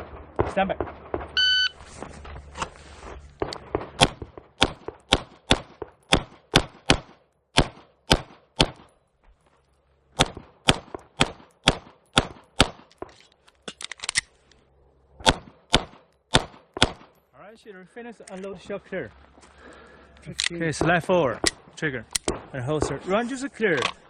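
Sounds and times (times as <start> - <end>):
pistol shots: 3.4 - 8.9, 10.2 - 13.0, 15.2 - 17.1, 20.8 - 23.1.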